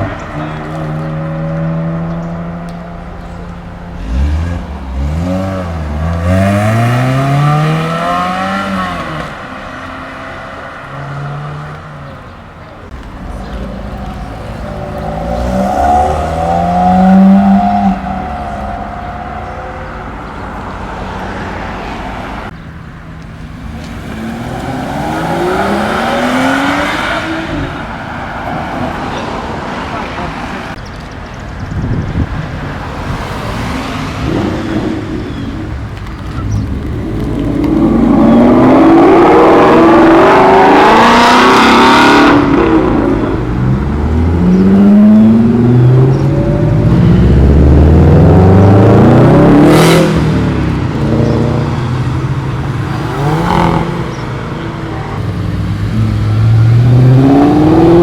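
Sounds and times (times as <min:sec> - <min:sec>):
car engine revving and accelerating: 0:00.0 - 0:12.2, 0:12.9 - 0:22.5, 0:23.4 - 0:30.8, 0:32.0 - 0:58.0
car engine running steadily: 0:50.5 - 0:57.0.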